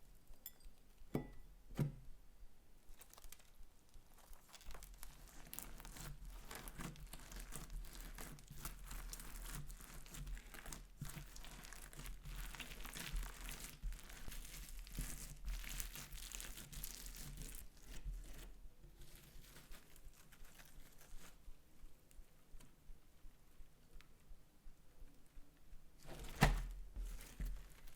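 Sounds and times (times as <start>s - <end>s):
slime crackling and squelching: 3.0s - 18.4s.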